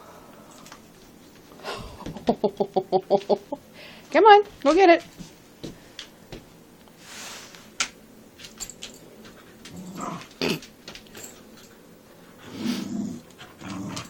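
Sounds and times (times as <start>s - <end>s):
dog growling low: 9.7s - 10.7s, 12.4s - 14.0s.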